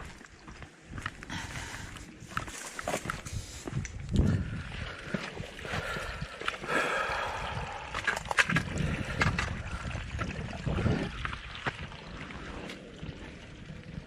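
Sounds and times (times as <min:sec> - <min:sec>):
footsteps on dirt and stones: 0:00.0 - 0:06.7.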